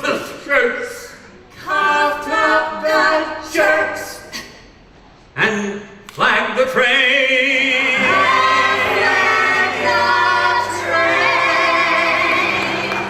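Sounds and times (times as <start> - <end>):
vocal quartet singing in harmony: 7.3 - 13.0.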